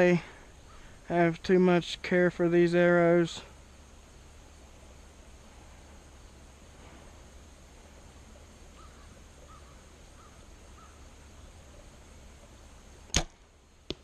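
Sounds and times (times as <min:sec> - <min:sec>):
arrow striking a target: 0:13.1 - 0:13.4
bow release snap: 0:13.1 - 0:14.0.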